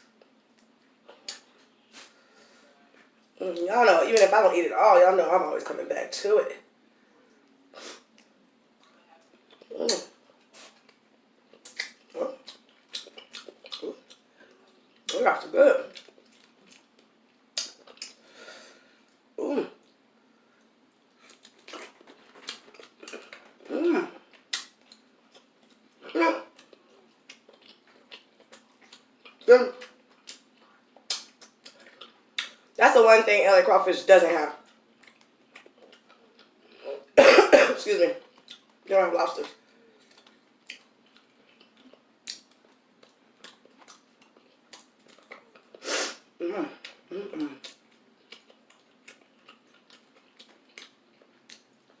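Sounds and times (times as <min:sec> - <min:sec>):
chewing and mouth clicks: 0:08.1 - 0:15.2, 0:15.9 - 0:18.2, 0:24.3 - 0:32.6, 0:34.7 - 0:36.6, 0:38.2 - 0:38.8, 0:40.0 - 0:45.8, 0:46.8 - 0:52.0
woman clearing her throat: 0:19.4 - 0:19.8, 0:23.7 - 0:24.2, 0:26.0 - 0:26.5, 0:37.2 - 0:37.8.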